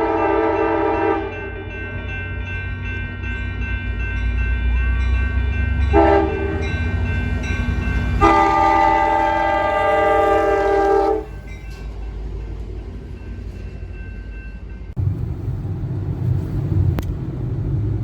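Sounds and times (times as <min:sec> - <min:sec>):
horn blasts: 0:00.0 - 0:01.6, 0:05.9 - 0:06.8, 0:08.2 - 0:11.4
steady low rumble: 0:14.9 - 0:18.0.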